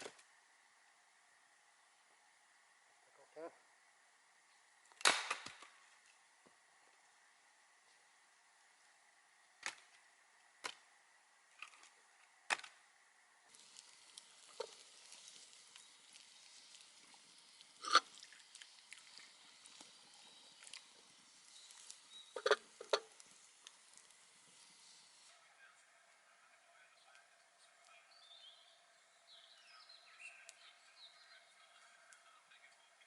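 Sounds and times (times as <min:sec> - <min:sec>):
axe chopping firewood: 0:05.0 - 0:05.7.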